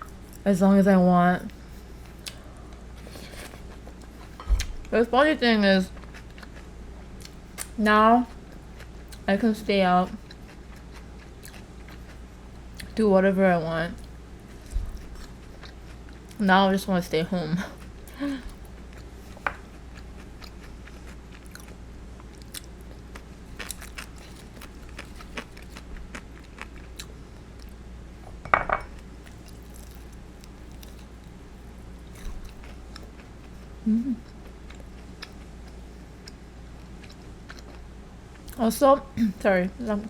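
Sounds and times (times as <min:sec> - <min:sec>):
closed-mouth hum: 0:00.0 - 0:40.0
chewing crispy fried chicken: 0:10.1 - 0:13.0, 0:17.6 - 0:27.8, 0:29.0 - 0:38.6.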